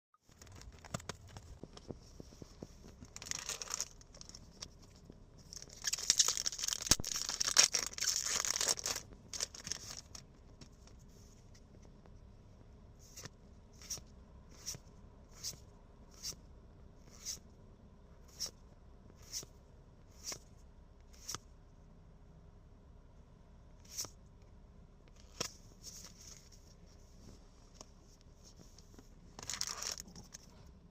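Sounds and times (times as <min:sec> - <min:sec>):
foil pack torn open crinkling: 0:03.1 - 0:04.6, 0:05.5 - 0:10.2, 0:29.4 - 0:30.1.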